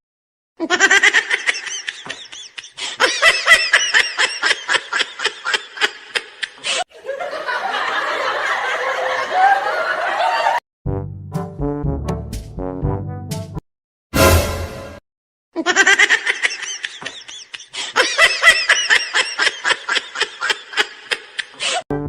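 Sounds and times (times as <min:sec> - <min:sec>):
loud rapid laughter: 0:00.6 - 0:10.6, 0:15.6 - 0:21.8.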